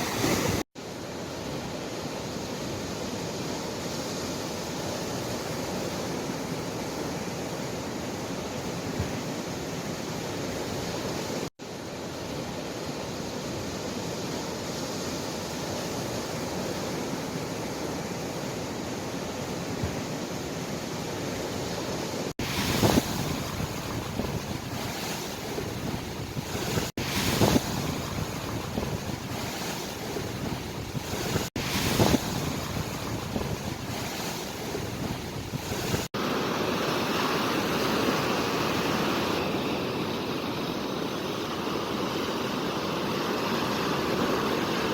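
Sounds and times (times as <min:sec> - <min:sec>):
ocean waves breaking on shore: 0:00.0 - 0:44.9.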